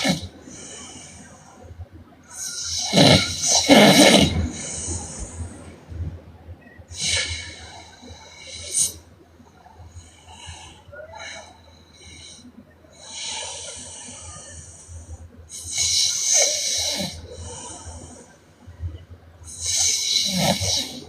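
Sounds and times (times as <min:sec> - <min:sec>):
woman snoring: 0:00.0 - 0:00.3, 0:02.5 - 0:04.7, 0:19.5 - 0:21.0.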